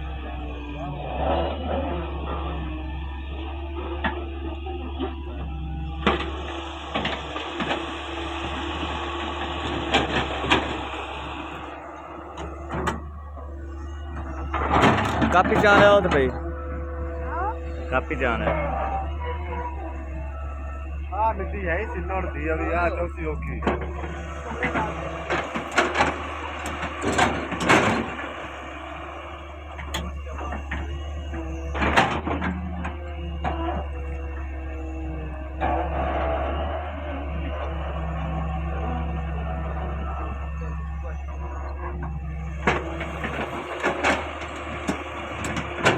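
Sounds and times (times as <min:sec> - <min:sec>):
excavator engine and hydraulic drone: 0:00.0 - 0:45.9.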